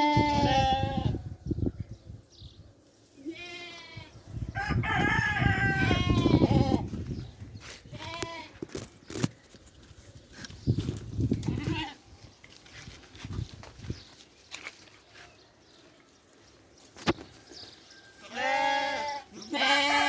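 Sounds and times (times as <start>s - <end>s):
sheep bleating: 3.2s - 4.1s, 18.2s - 20.0s.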